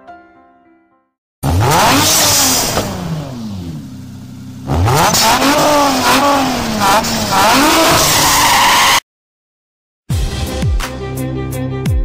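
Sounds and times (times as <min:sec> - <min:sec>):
imitated revving engine: 0:01.4 - 0:09.0.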